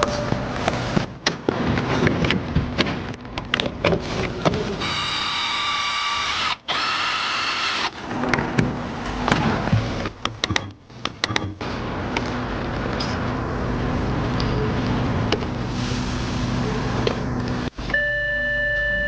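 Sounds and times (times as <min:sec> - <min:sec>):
power tool whining: 0:04.8 - 0:08.0
sharp clicks and knocks: 0:08.2 - 0:13.2.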